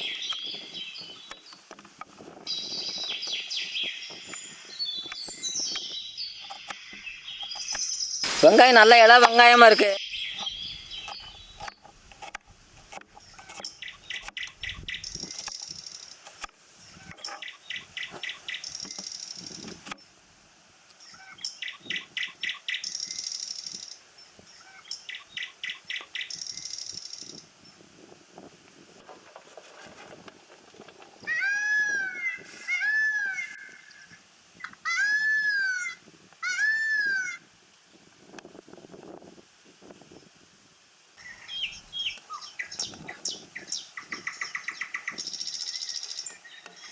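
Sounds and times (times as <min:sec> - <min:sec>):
songbird singing: 0:00.0 - 0:01.8, 0:02.5 - 0:11.9, 0:13.2 - 0:16.2, 0:16.9 - 0:20.1, 0:20.9 - 0:27.8, 0:41.2 - 0:46.9.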